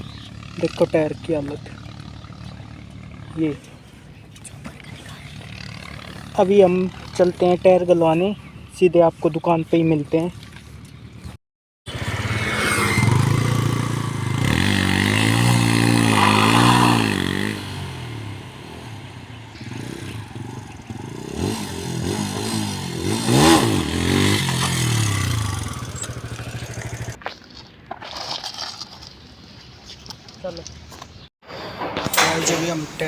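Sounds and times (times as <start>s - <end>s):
motorcycle engine revving: 0.0s - 8.8s, 10.6s - 27.2s.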